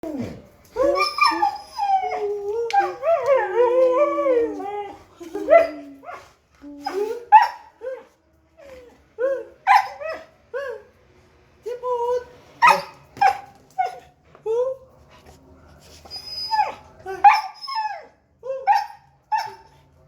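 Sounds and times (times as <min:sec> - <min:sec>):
dog howling and whining: 0:00.0 - 0:08.0
dog yelping and barking: 0:06.8 - 0:07.7.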